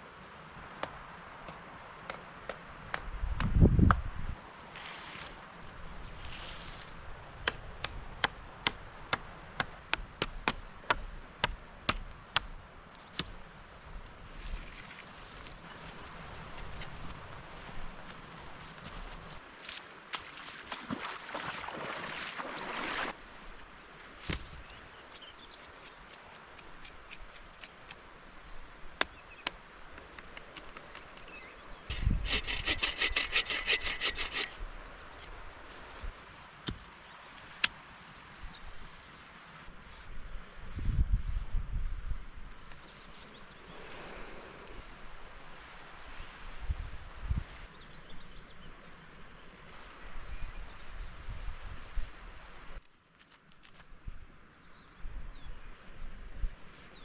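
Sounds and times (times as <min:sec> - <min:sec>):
hand saw cutting wood: 0:31.9 - 0:34.6.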